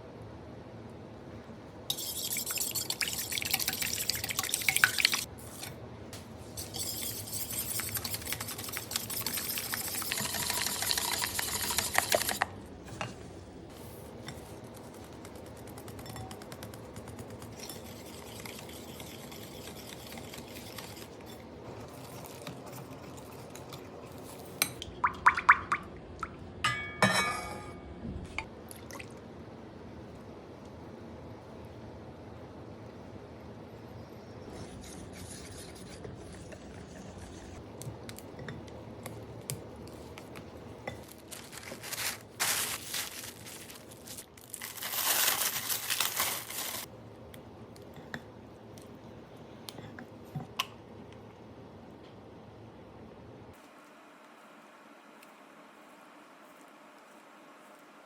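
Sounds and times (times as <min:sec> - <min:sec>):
liquid pouring: 0:24.8 - 0:26.4.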